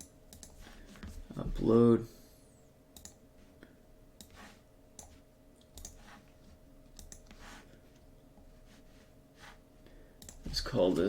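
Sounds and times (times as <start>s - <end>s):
computer mouse clicks: 0.0s - 0.6s, 3.0s - 3.2s, 5.0s - 6.1s, 7.0s - 7.4s, 10.2s - 10.4s.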